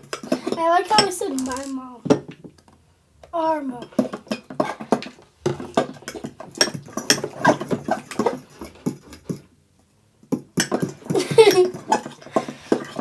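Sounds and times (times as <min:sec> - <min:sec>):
utensils clicking against bowls: 0:03.8 - 0:09.4, 0:10.6 - 0:13.0.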